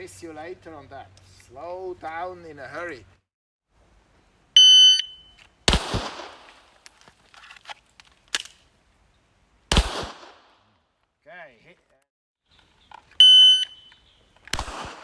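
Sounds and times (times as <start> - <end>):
pistol shots: 5.7 - 6.6, 9.7 - 10.5, 14.5 - 15.0
electronic shot timer beep: 13.2 - 13.9.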